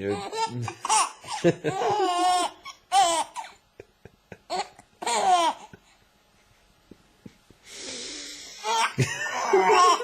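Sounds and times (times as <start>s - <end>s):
infant laughing: 0.1s - 3.6s, 4.4s - 5.9s, 8.6s - 10.0s.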